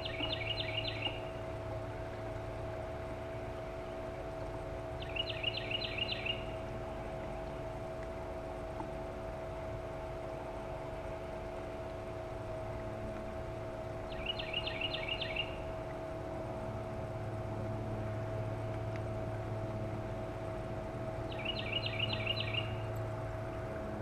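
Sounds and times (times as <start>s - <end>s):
songbird singing: 0.0s - 1.6s, 3.2s - 7.5s, 13.5s - 15.9s, 21.1s - 23.6s
steady low hum: 0.0s - 24.0s.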